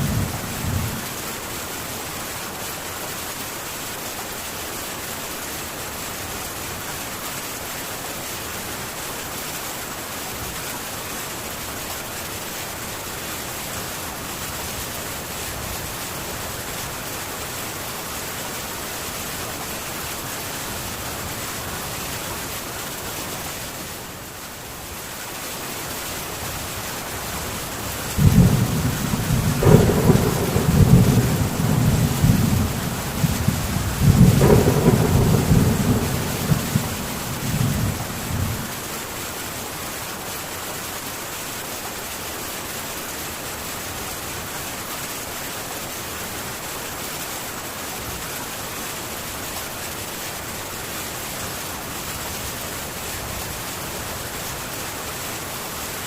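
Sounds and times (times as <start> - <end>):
rain on a tin roof: 0.0 - 56.0
thunder rumble: 28.2 - 38.9.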